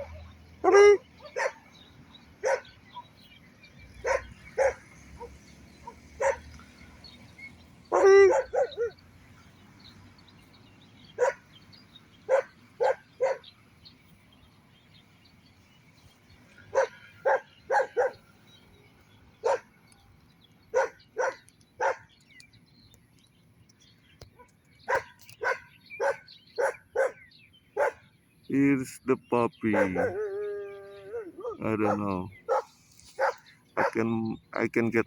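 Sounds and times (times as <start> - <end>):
dog barking: 0.0 - 1.7, 2.4 - 2.8, 4.0 - 6.5, 7.9 - 9.0, 11.2 - 11.4, 12.3 - 13.5, 16.7 - 18.2, 19.4 - 19.7, 20.7 - 22.1, 24.4 - 27.2, 27.8 - 28.0, 29.7 - 30.2, 31.4 - 34.0.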